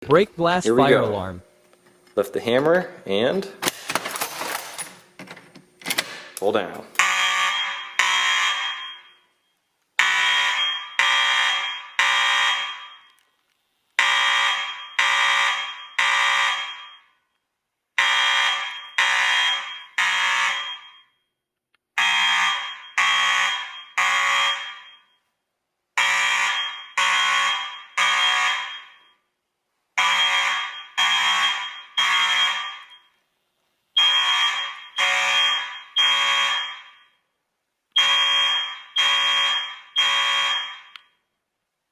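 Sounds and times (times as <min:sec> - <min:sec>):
fire alarm tones: 0:07.0 - 0:13.2, 0:14.0 - 0:17.4, 0:18.0 - 0:21.4, 0:22.0 - 0:25.3, 0:26.0 - 0:29.3, 0:30.0 - 0:33.2, 0:34.0 - 0:37.3, 0:38.0 - 0:41.3.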